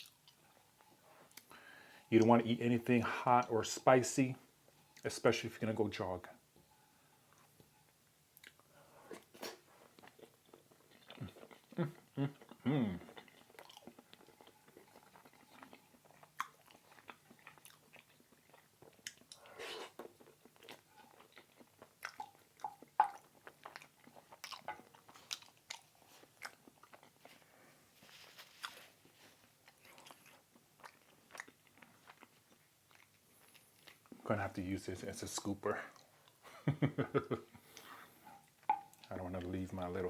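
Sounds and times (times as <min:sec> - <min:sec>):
chewing and crunching food: 0:00.0 - 0:01.6, 0:07.3 - 0:34.2, 0:35.2 - 0:36.5
wet mouth clicks: 0:22.0 - 0:23.2.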